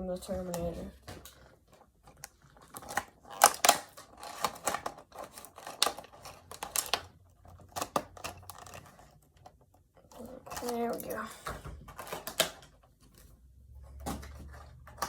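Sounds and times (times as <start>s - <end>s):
plastic packaging crackling: 0.3s - 11.3s.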